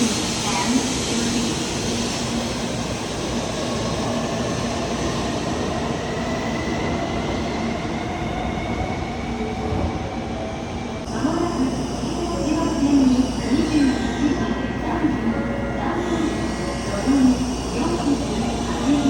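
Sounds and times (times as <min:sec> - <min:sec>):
high-speed train rushing: 0:00.0 - 0:19.0.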